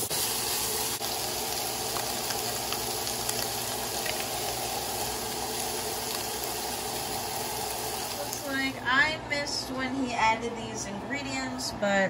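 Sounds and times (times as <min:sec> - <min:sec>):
food sizzling in a pan: 0:00.0 - 0:08.8.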